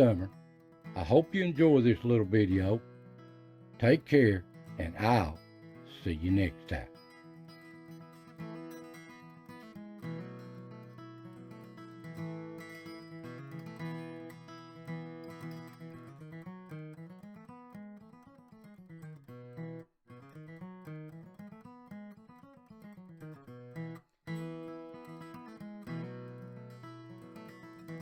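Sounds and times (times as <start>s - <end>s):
acoustic guitar picking: 0.0s - 28.0s.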